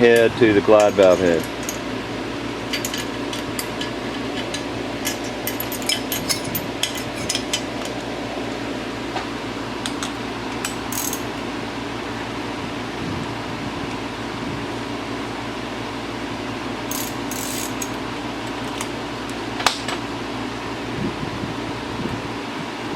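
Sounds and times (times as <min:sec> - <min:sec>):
steady background hum: 0:00.0 - 0:22.9
metallic clicks and clinks: 0:02.7 - 0:08.0.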